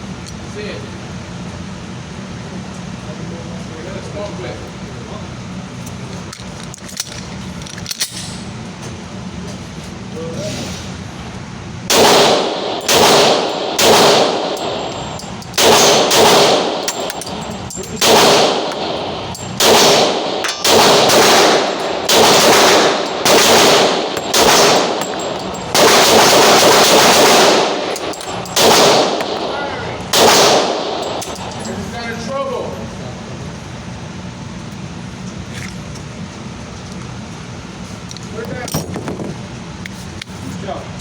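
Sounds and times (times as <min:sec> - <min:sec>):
pistol shots: 0:11.9 - 0:31.6.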